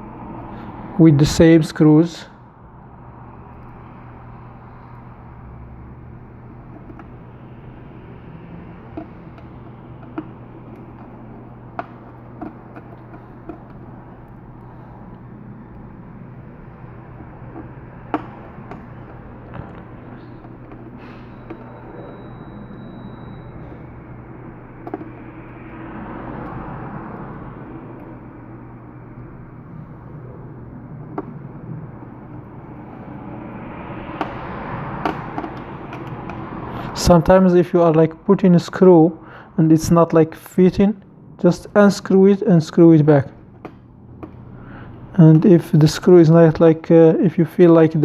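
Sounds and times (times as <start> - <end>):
steady background rumble: 0.0 - 48.0
steady low hum: 0.0 - 48.0
screwdriver clicks and taps: 24.8 - 25.1.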